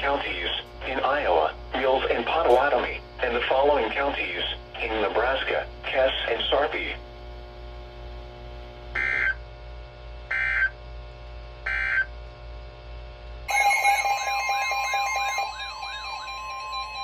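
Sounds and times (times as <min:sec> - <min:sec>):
steady electronic tone: 0:13.5 - 0:17.0
warbling electronic alert: 0:13.5 - 0:17.0.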